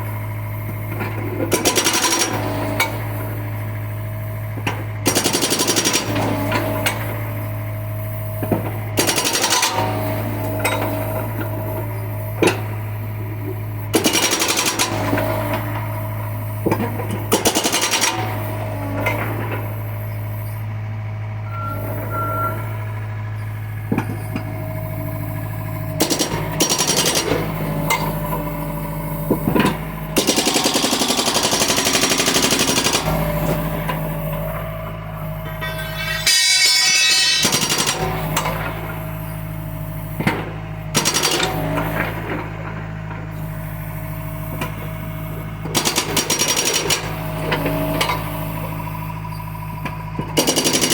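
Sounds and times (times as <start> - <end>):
excavator diesel engine running: 0.0 - 50.9
metallic clanks: 33.5 - 38.8.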